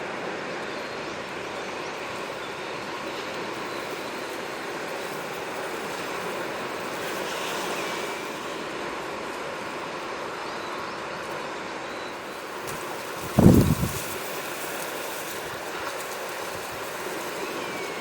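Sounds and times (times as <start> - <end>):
sea waves washing on shore: 1.2 - 18.0.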